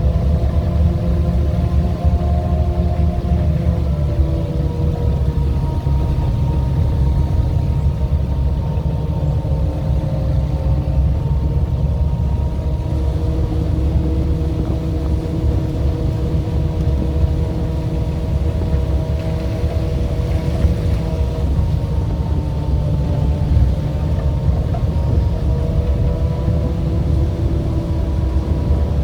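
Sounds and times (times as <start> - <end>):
vehicle engine running: 0.0 - 29.0.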